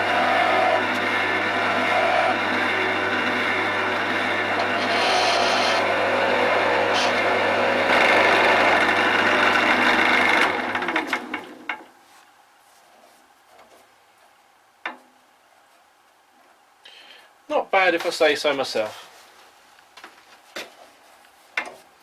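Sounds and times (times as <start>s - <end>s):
chisel cutting wood on lathe: 0.0s - 11.7s
lathe motor hum: 0.0s - 11.7s
lathe winding down: 0.0s - 11.7s.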